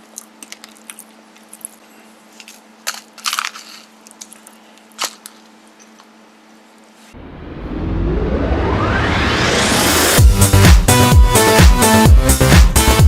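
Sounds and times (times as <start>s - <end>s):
crackling crunching noises: 0.0s - 6.2s
low steady hum: 0.0s - 11.1s
electronic music with rising sweep: 7.1s - 13.0s.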